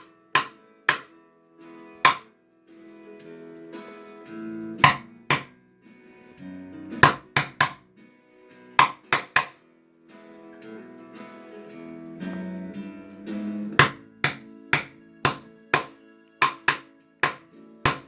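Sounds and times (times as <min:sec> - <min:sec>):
percussive hits on guitar: 0:04.8 - 0:05.5, 0:13.8 - 0:18.0.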